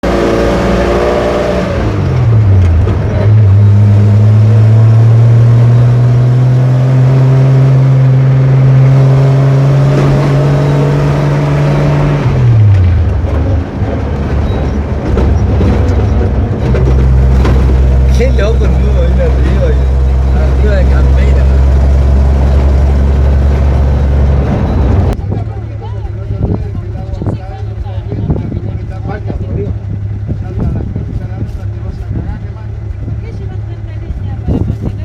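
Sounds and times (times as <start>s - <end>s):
pickup truck engine running: 10.3s - 35.0s.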